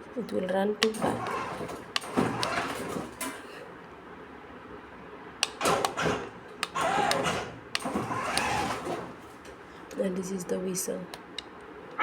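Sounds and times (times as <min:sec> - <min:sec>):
sharp clicks and knocks: 0:00.8 - 0:03.5, 0:05.4 - 0:09.6
electric toy car motor: 0:00.9 - 0:03.2, 0:05.7 - 0:09.4.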